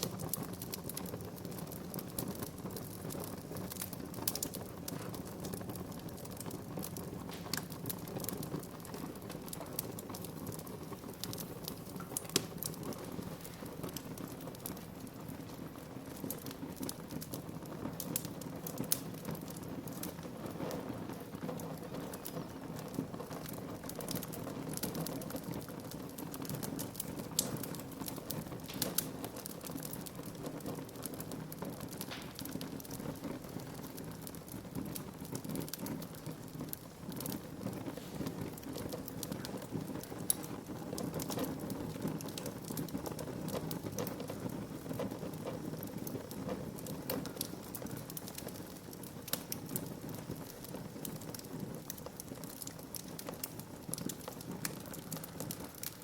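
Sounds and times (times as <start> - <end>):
loud pops from fire: 0.0 - 56.0
wood fire crackling: 0.0 - 56.0.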